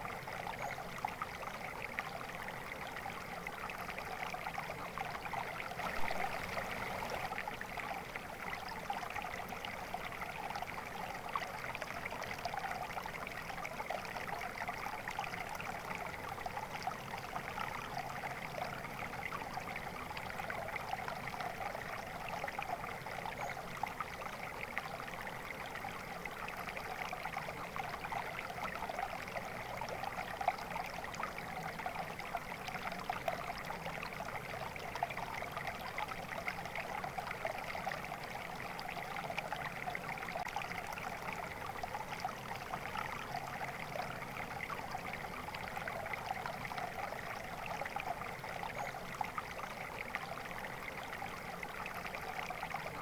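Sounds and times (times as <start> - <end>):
stream babbling over stones: 0.0 - 53.0.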